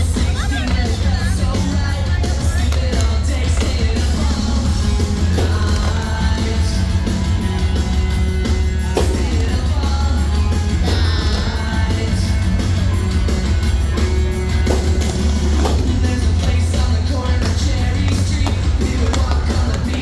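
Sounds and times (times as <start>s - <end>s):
person singing: 0.0s - 8.1s, 8.8s - 14.9s, 15.6s - 20.0s
loud music with heavy bass: 0.0s - 20.0s.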